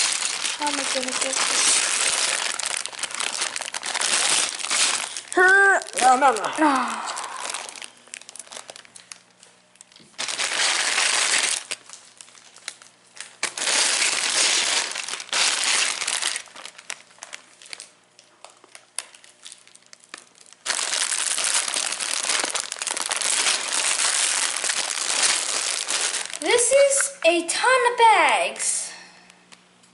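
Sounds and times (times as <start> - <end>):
plastic bag crinkling: 0.0 - 27.0.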